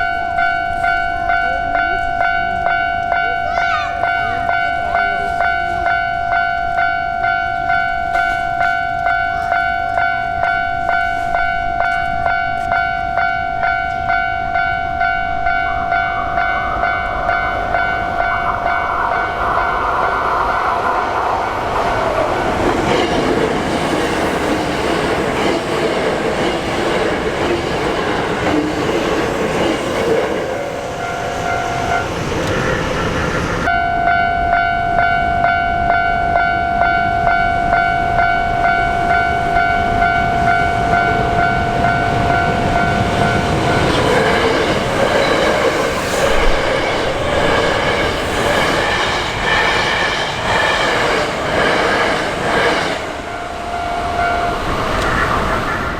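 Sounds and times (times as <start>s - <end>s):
level-crossing bell ringing: 0.0s - 20.4s, 30.5s - 32.2s, 33.6s - 46.2s, 53.0s - 55.1s
train wheels on rails: 0.0s - 55.9s.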